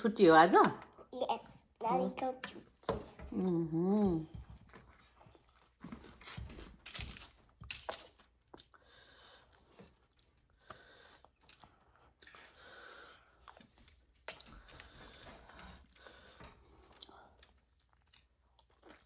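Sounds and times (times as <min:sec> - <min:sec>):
person chewing noodles: 0:04.4 - 0:19.0.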